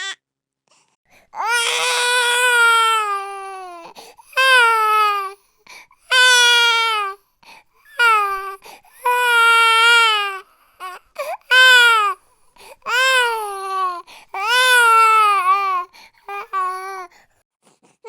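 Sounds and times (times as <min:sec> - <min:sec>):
baby crying: 0:01.4 - 0:05.4, 0:06.1 - 0:07.2, 0:08.0 - 0:12.2, 0:12.8 - 0:17.1
baby catching breath: 0:03.8 - 0:04.3, 0:12.3 - 0:12.9, 0:14.0 - 0:14.4, 0:15.9 - 0:16.3.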